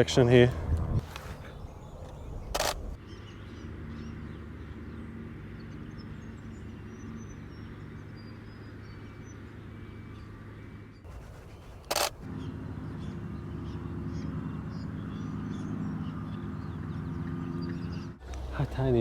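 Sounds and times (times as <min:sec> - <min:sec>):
steady low rumble: 0:00.0 - 0:03.0.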